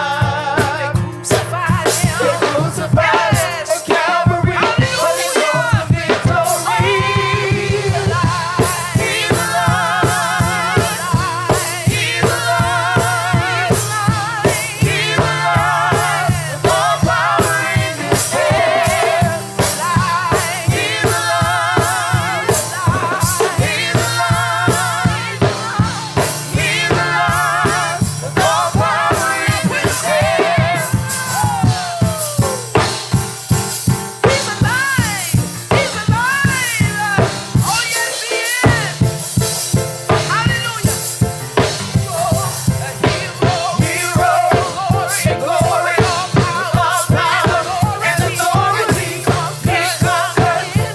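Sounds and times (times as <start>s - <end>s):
drum kit beat: 0.0s - 50.9s.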